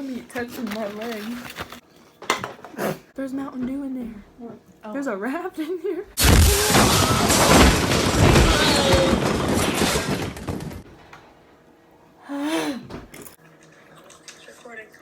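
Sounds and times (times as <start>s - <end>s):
loud noise burst with knocks: 6.2s - 11.1s.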